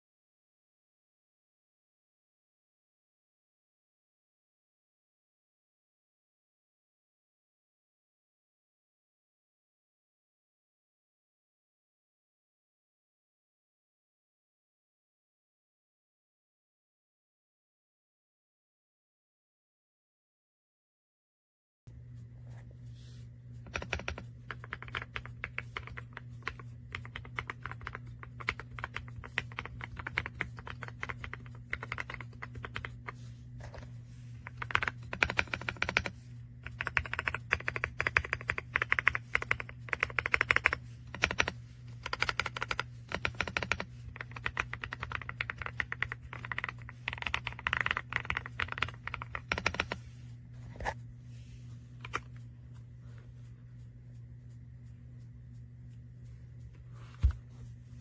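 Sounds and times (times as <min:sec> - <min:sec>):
steady low hum: 0:21.9 - 0:58.0
mechanical keyboard typing: 0:23.7 - 0:33.2, 0:34.4 - 0:50.0.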